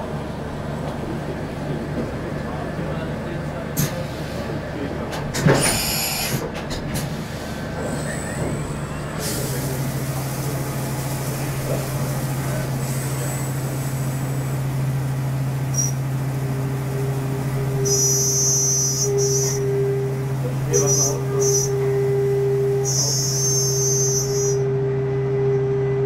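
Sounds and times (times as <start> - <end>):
high steady machine tone: 16.8 - 26.0.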